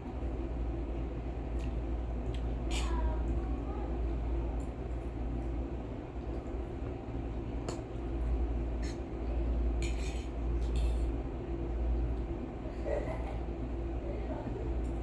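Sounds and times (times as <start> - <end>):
steady low hum: 0.0 - 15.0
utensils clinking against a bowl: 9.8 - 11.1.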